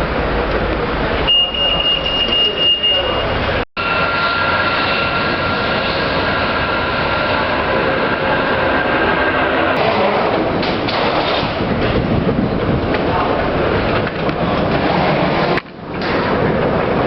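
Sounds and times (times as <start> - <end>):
vehicle running noise: 0.0 - 17.0
high whine: 3.1 - 10.6.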